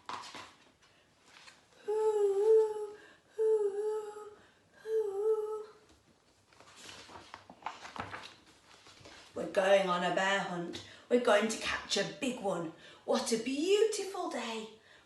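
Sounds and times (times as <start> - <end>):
woman imitating howling wind: 1.9 - 5.7.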